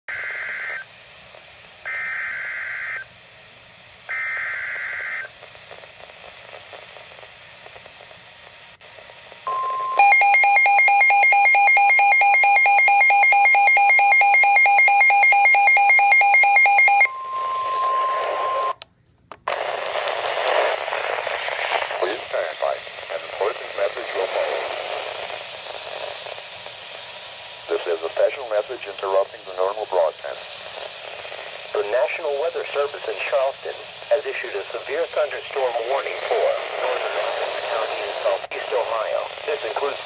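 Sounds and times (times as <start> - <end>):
static hiss: 0.1 - 9.8, 19.4 - 40.0
crackling static: 0.1 - 40.0
rapidly pulsing electronic alarm: 1.9 - 3.0, 4.1 - 5.3, 9.5 - 18.7
steady alarm tone: 9.5 - 18.7.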